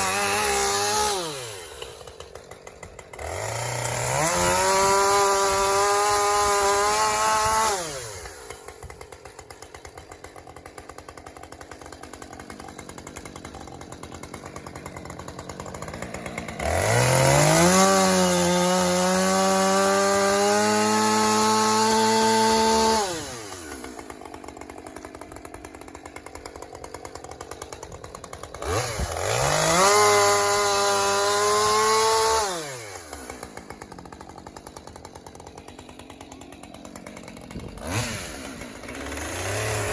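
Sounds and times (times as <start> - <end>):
chainsaw idling and revving: 0.0 - 39.9.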